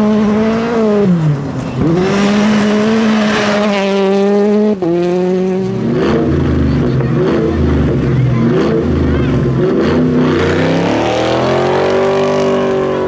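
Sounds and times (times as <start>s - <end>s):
rally car engine revving: 0.0s - 13.0s.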